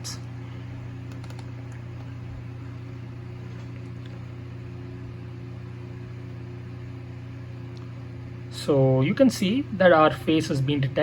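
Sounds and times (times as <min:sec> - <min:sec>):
low background hum: 0:00.0 - 0:11.0.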